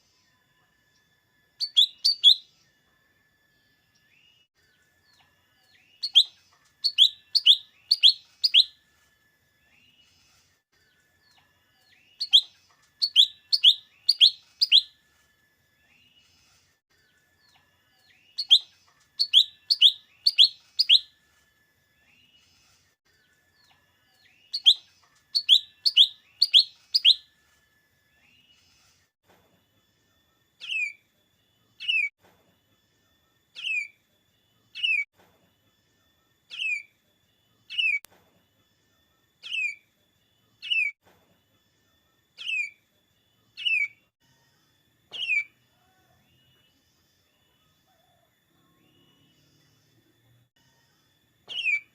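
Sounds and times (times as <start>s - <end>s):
bird whistling descending notes: 1.6s - 2.5s, 6.0s - 8.8s, 12.1s - 15.0s, 18.3s - 21.1s, 24.4s - 27.3s
bird chirping: 1.6s - 2.6s, 3.6s - 8.8s, 10.9s - 15.0s, 17.1s - 21.2s, 22.0s - 27.3s, 35.8s - 41.0s, 41.6s - 51.9s.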